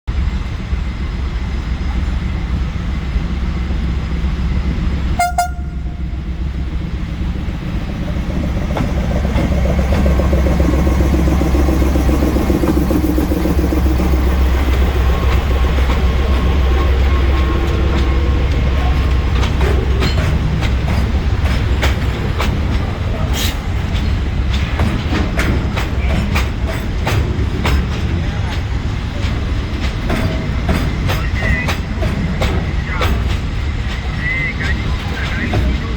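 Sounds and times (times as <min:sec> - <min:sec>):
locomotive engine drone: 0:00.1 - 0:35.9
short high horn pip: 0:05.2 - 0:06.0
wheels clicking on rail joints: 0:05.4 - 0:35.9.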